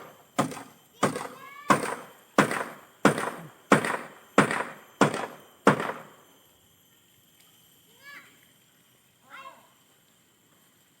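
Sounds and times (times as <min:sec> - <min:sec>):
sharp ringing knocks: 0:00.0 - 0:06.2.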